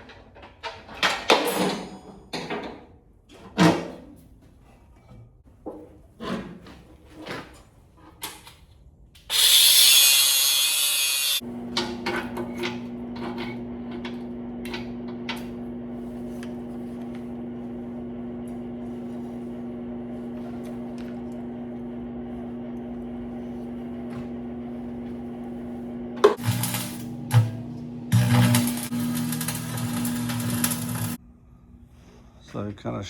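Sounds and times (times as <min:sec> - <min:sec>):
machine hum: 0:11.4 - 0:31.2.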